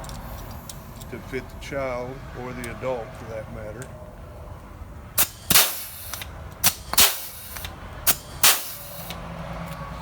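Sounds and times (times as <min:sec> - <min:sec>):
air hiss: 0:05.2 - 0:09.2
pneumatic rivet gun snapping: 0:05.2 - 0:09.2.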